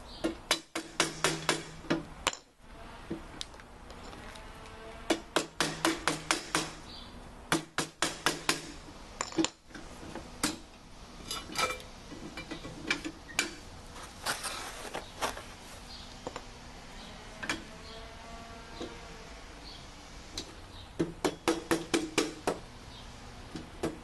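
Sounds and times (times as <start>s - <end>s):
metal rails clicking and clanking: 11.2s - 13.7s.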